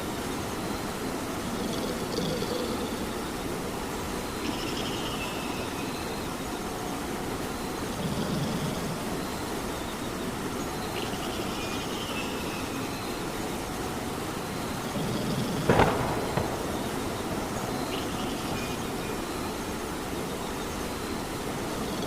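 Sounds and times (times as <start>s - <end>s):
steady rain falling: 0.0s - 22.0s
sharp crack: 15.7s - 18.8s.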